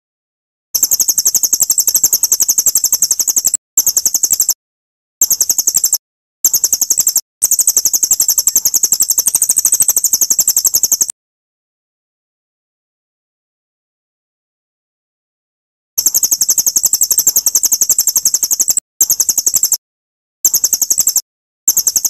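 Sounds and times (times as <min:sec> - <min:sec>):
songbird trilling: 0:05.2 - 0:11.1.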